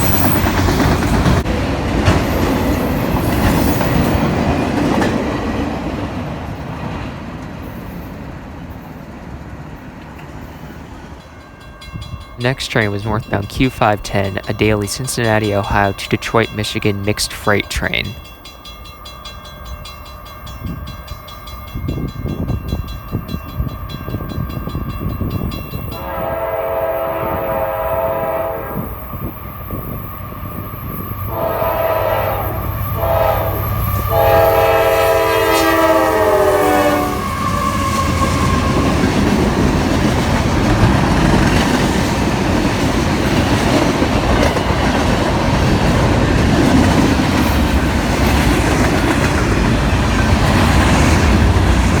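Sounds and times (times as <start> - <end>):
train wheels clacking on rails: 0.0 - 8.2, 37.4 - 52.0
crossing bell ringing: 10.4 - 26.2
locomotive air horn: 26.0 - 28.9, 31.3 - 38.3.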